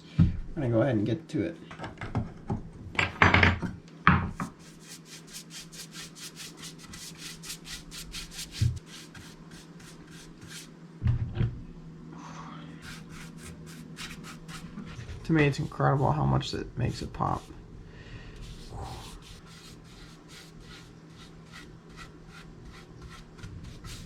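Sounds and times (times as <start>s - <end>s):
knocks and scrapes: 8.4s - 9.2s.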